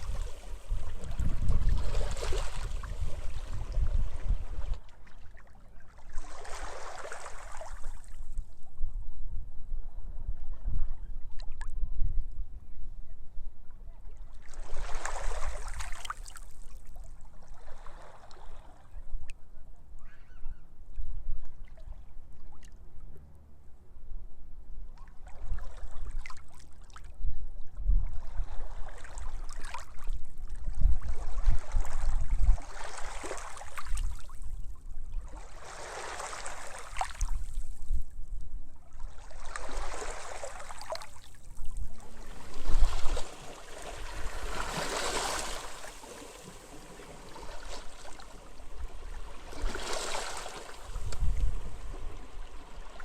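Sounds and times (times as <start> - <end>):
wind rumbling on microphone: 0.0 - 5.0, 27.1 - 35.6, 36.5 - 53.0
sea waves washing onto beach: 42.0 - 53.0.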